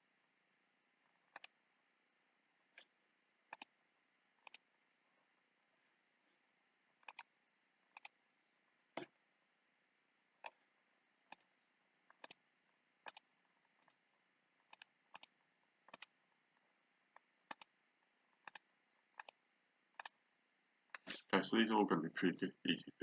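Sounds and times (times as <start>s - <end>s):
mouse buttons clicking: 1.2s - 1.6s, 2.7s - 3.8s, 4.4s - 4.7s, 7.0s - 7.3s, 7.9s - 8.2s, 10.4s - 10.6s, 11.2s - 12.4s, 13.0s - 14.0s, 14.6s - 16.2s, 17.1s - 17.8s, 18.4s - 20.2s.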